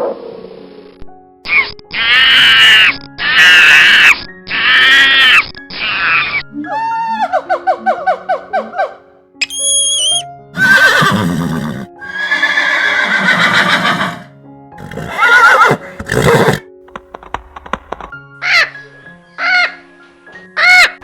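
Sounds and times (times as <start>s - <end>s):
background music held notes: 5.4s - 21.0s
horse neighing: 9.4s - 16.7s.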